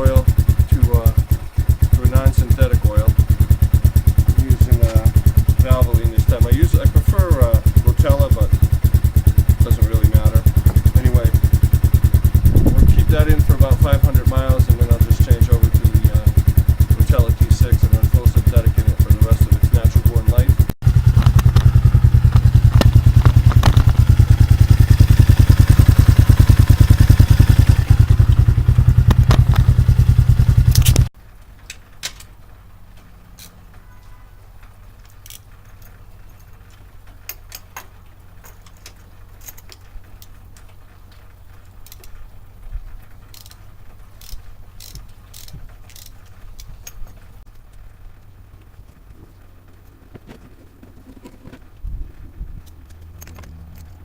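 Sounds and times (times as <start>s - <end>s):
motorcycle engine idling: 0.0s - 31.1s.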